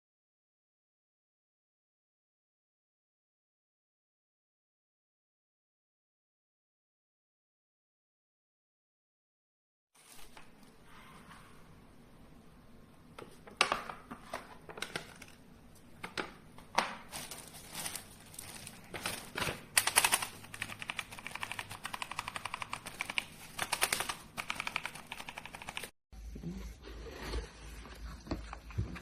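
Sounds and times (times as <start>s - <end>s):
mechanical keyboard typing: 19.8s - 25.9s.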